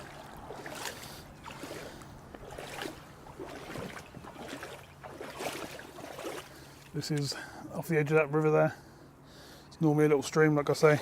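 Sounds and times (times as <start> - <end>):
floodwater sloshing and splashing: 0.0 - 7.2.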